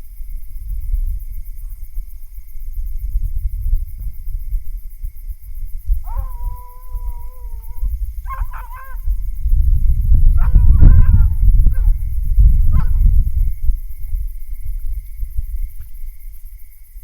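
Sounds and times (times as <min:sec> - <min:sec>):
heavy low rumbling: 0:05.3 - 0:15.8
dog barking: 0:06.0 - 0:09.4, 0:10.4 - 0:12.1, 0:12.7 - 0:13.4
hounds baying: 0:06.0 - 0:09.4, 0:10.3 - 0:12.1, 0:12.7 - 0:13.4.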